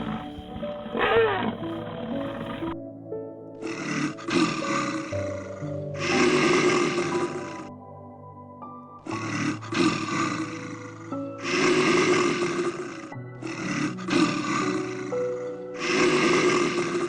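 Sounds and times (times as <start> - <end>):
animal roaring: 0.0 - 2.8, 3.6 - 7.7, 9.1 - 15.1
background music with held notes: 0.0 - 17.0.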